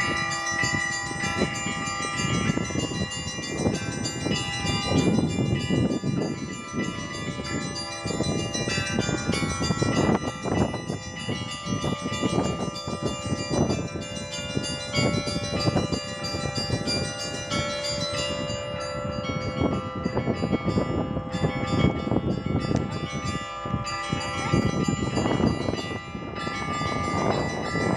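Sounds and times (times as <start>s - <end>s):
bells struck quickly: 0.0s - 27.9s
large bells ringing sustained: 0.0s - 27.9s.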